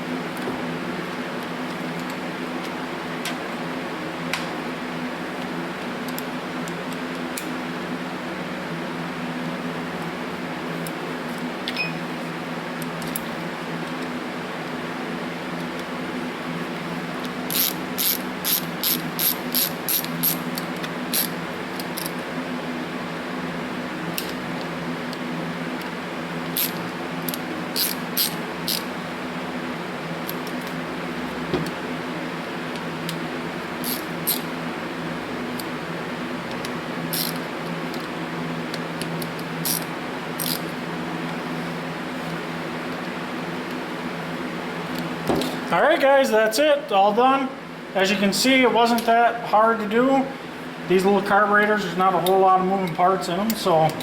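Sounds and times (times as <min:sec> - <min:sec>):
shop fan humming: 0:00.0 - 0:54.0
hand ratchet strokes: 0:17.5 - 0:22.2, 0:26.5 - 0:28.9, 0:33.8 - 0:34.5, 0:37.1 - 0:37.4, 0:39.3 - 0:40.7.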